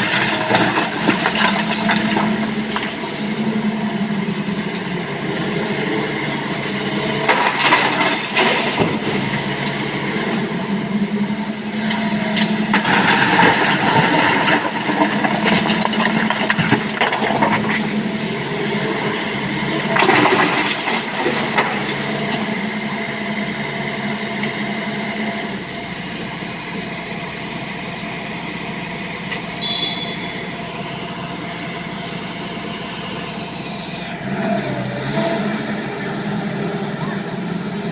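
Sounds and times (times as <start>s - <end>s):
excavator diesel engine running: 0.0s - 37.9s
brief high squeak: 29.6s - 30.4s.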